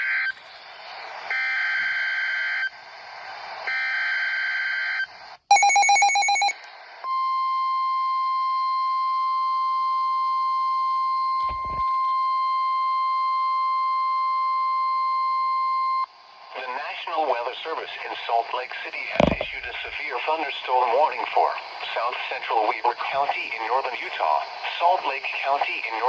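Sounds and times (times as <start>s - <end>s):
low thump: 19.2s - 20.0s.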